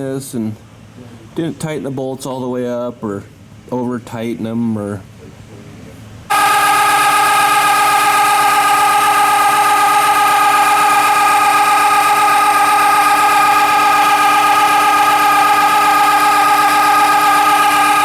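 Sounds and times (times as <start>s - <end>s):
car engine idling: 6.3s - 18.0s.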